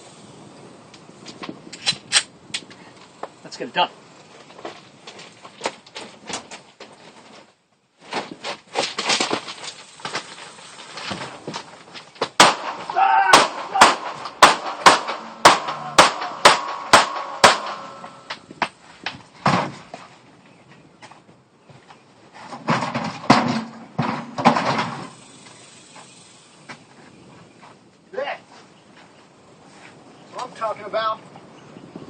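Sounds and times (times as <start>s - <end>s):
knocks and clatter: 8.3s - 20.0s, 22.4s - 25.2s
rapid gunfire: 12.4s - 18.0s.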